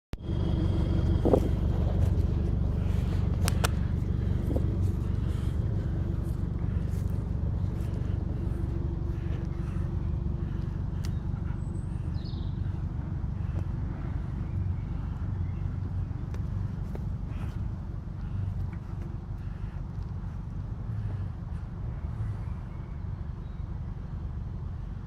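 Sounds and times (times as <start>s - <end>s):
car engine running: 0.1s - 25.0s.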